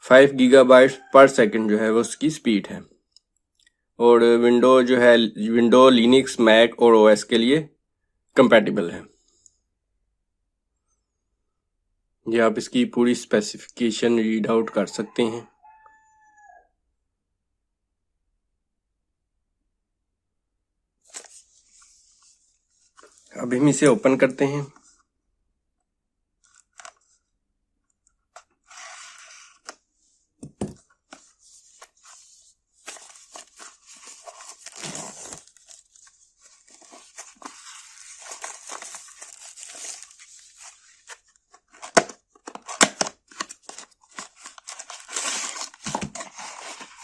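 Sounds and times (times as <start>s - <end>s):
packaging rustling and tearing: 31.1s - 47.0s.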